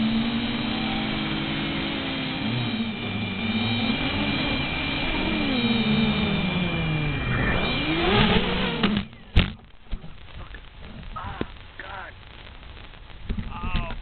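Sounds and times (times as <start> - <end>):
steady high tone: 0.0 - 9.0
drone motors whining: 0.0 - 11.6
rush of air: 2.8 - 8.8.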